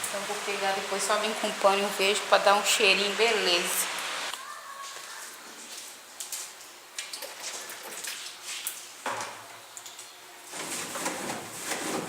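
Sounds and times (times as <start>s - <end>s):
cloth rubbing on refrigerator: 10.5s - 12.0s.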